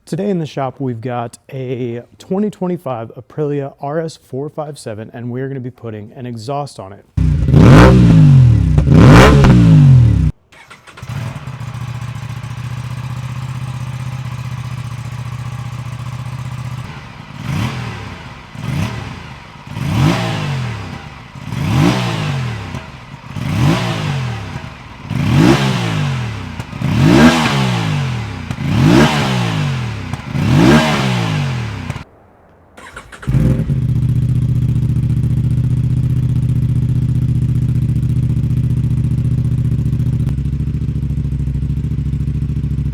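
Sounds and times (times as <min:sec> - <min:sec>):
motorcycle engine idling and revving: 0:07.2 - 0:32.1, 0:32.8 - 0:42.9.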